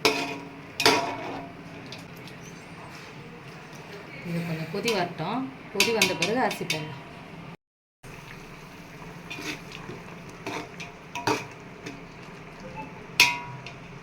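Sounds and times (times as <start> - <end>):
metal spoon clinking on pot: 0.0 - 2.0, 10.4 - 12.0, 13.2 - 13.8.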